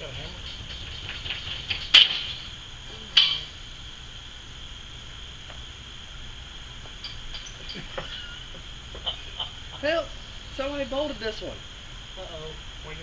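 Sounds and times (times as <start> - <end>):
high drone of insects: 0.0 - 13.0
sharp knocks: 0.2 - 2.6.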